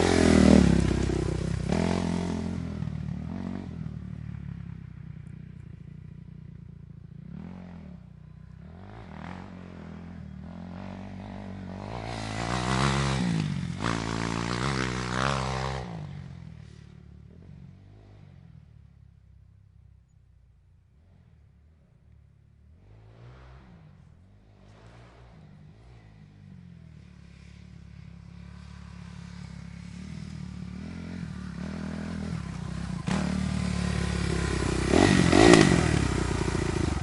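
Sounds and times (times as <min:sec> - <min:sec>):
dirt bike engine revving: 0:00.0 - 0:03.8, 0:08.7 - 0:16.1, 0:22.7 - 0:37.0.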